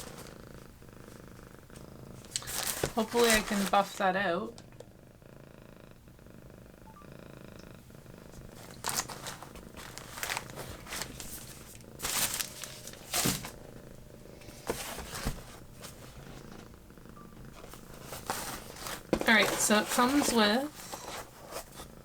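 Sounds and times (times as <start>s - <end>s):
packaging rustling and crinkling: 0.0s - 0.4s, 2.2s - 4.0s, 8.4s - 13.6s, 14.6s - 16.7s, 17.5s - 21.9s
cat purring: 0.0s - 22.0s.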